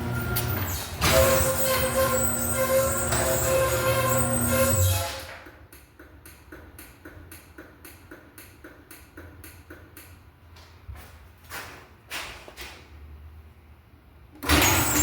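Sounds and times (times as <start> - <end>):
garage door opener motor: 0.0 - 5.4, 14.4 - 15.0.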